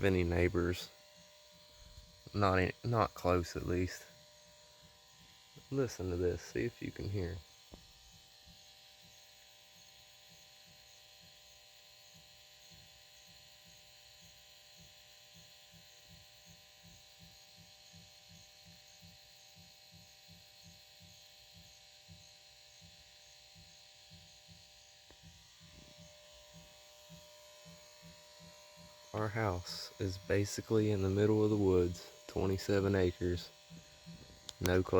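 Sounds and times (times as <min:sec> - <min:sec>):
steady hiss: 0:00.0 - 0:04.2, 0:05.2 - 0:07.8, 0:25.1 - 0:34.9
faint low drum-like beat: 0:13.6 - 0:34.9.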